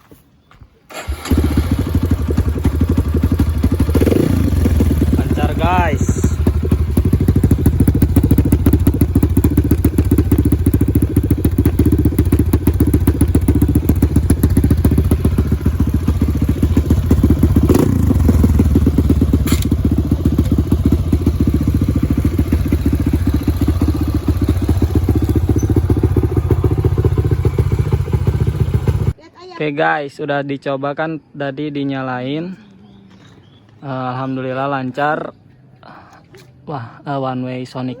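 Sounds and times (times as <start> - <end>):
motorcycle engine idling: 0.9 - 29.2.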